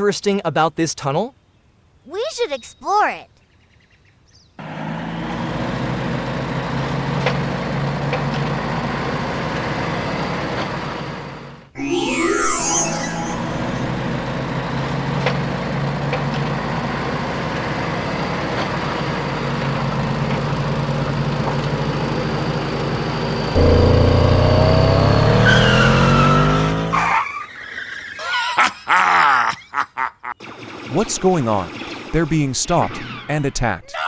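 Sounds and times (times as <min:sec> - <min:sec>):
car engine revving: 0:14.1 - 0:27.2
sharp squeals: 0:23.6 - 0:28.2.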